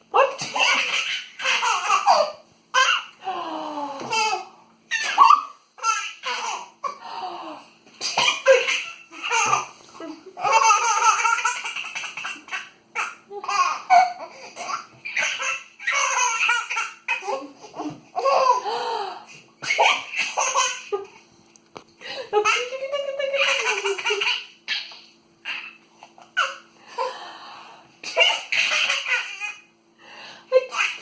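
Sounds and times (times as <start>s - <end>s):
baby laughing: 0.3s - 3.2s, 4.0s - 7.0s, 8.2s - 9.7s, 10.3s - 18.6s, 19.6s - 21.2s, 22.4s - 26.6s, 28.0s - 29.7s, 30.6s - 31.0s.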